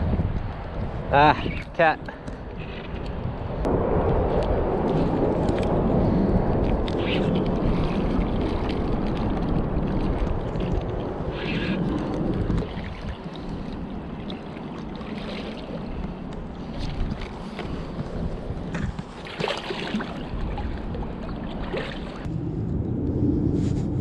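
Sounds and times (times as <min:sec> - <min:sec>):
wind buffeting microphone: 0:00.0 - 0:24.0
river water washing: 0:07.0 - 0:17.8, 0:19.2 - 0:22.3.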